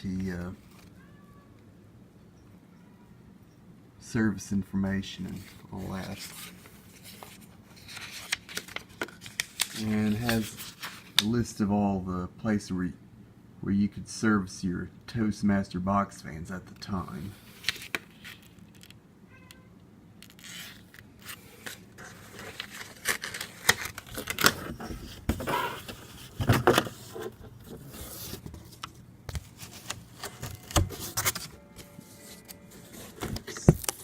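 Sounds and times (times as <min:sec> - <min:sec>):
paper rustling: 0:05.3 - 0:11.3, 0:17.2 - 0:18.9, 0:20.3 - 0:34.0.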